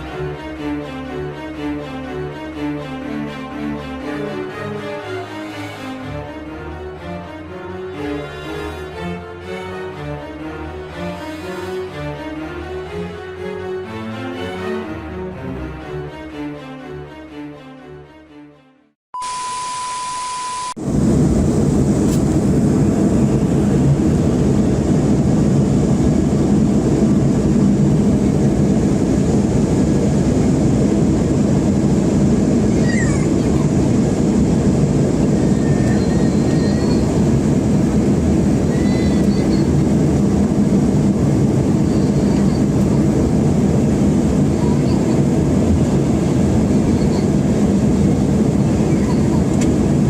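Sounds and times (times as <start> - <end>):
steady beep: 19.2 - 20.8
jet cabin engine rush: 20.8 - 50.0.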